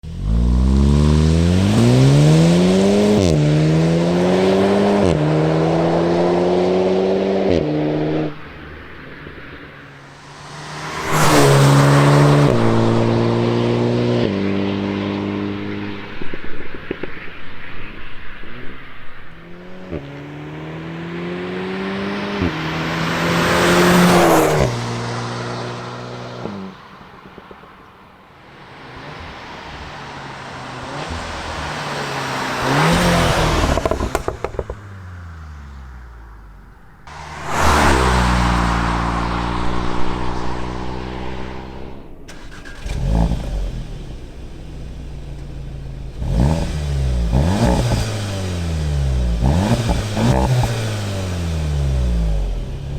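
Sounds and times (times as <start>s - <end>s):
car engine revving through upshifts: 0.0s - 27.6s, 28.5s - 52.9s
exhaust crackles and pops: 15.5s - 20.1s, 32.6s - 35.4s.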